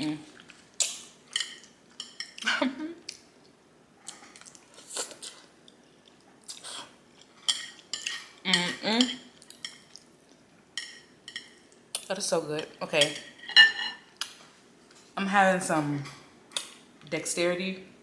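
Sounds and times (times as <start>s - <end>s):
person chewing: 0.3s - 8.3s
utensils clinking against dish: 1.3s - 2.4s, 12.8s - 14.1s.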